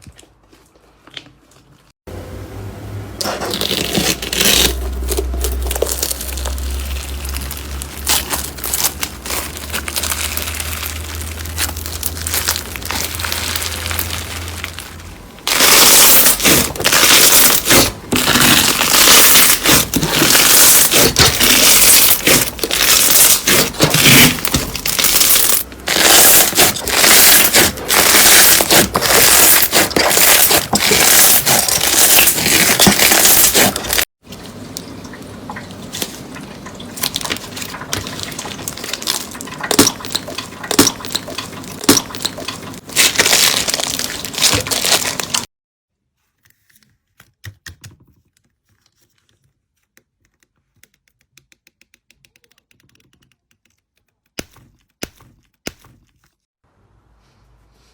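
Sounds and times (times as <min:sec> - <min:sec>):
slime crackling and popping: 0:03.5 - 0:34.1, 0:37.0 - 0:45.5.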